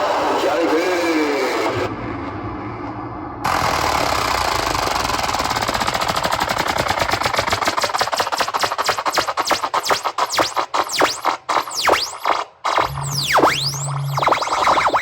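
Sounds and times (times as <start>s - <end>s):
hissing build-up of rapid beats: 3.8s - 15.0s.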